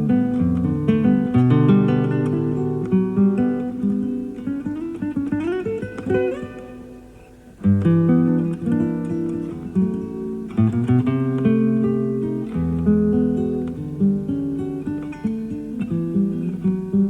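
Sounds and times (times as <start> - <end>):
classical guitar: 0.0 - 17.0.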